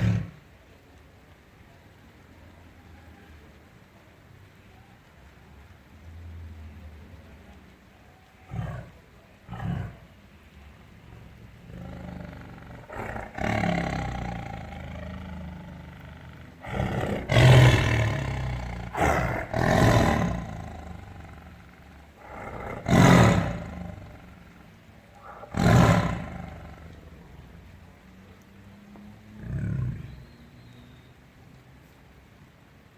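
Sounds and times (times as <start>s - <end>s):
low rumbling growl: 0.0s - 0.4s, 8.4s - 10.2s, 10.9s - 27.9s, 29.2s - 30.2s
tiger grunts: 0.0s - 0.4s, 8.4s - 10.2s, 11.5s - 27.0s
tiger roaring: 0.0s - 0.4s, 8.4s - 10.2s, 11.1s - 27.4s, 29.3s - 30.2s.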